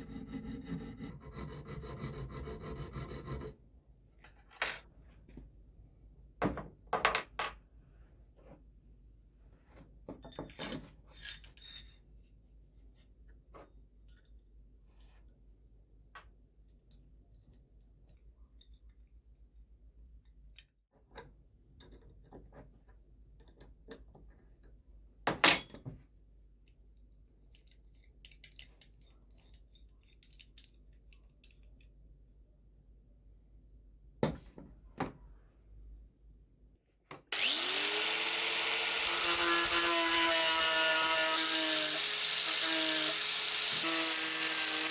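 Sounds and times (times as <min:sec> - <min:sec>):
metal tools clinking on workbench: 0:10.2 - 0:12.0.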